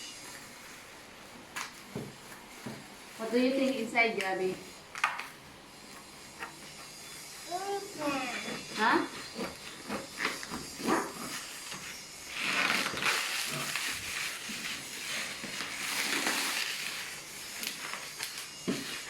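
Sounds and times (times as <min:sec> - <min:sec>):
plastic wrap rustling: 0:00.0 - 0:06.1, 0:08.8 - 0:19.0
packaging crinkling and scraping: 0:08.6 - 0:19.0.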